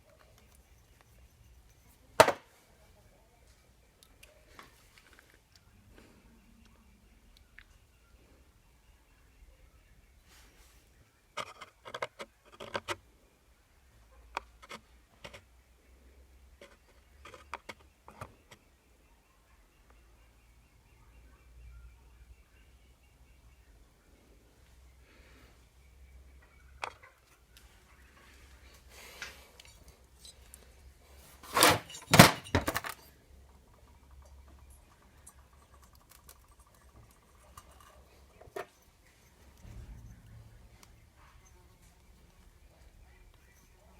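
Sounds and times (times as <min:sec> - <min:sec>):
metal clinks and knocks: 0:31.5 - 0:33.1.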